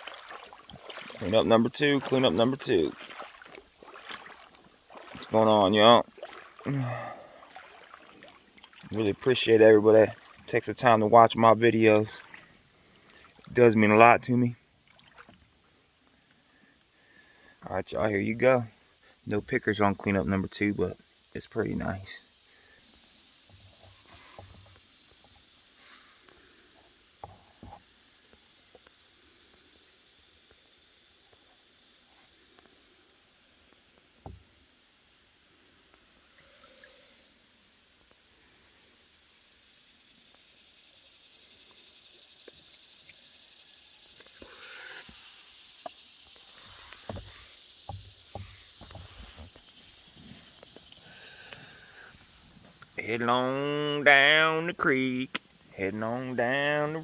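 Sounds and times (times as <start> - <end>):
higher insect buzz: 0.0 - 10.5, 21.0 - 57.0
insects chirring: 0.0 - 57.0
soft knocks and handling noises: 27.2 - 27.8, 45.8 - 51.6.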